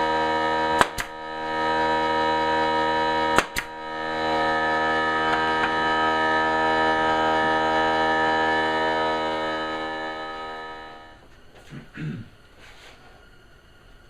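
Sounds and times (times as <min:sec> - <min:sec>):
sustained music chord: 0:00.0 - 0:11.2.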